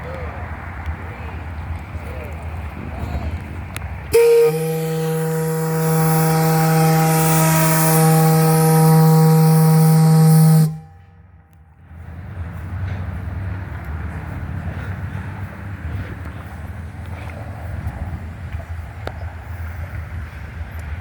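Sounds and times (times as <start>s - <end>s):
steam whistle blowing: 4.1s - 11.1s.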